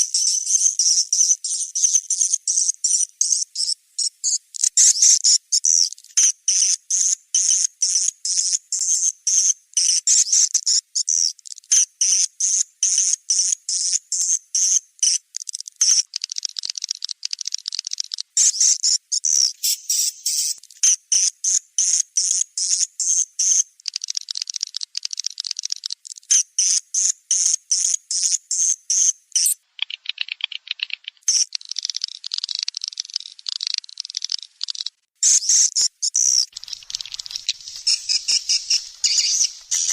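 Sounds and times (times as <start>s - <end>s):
swiftlets chirping and trilling: 18.4s - 20.6s, 31.0s - 39.9s.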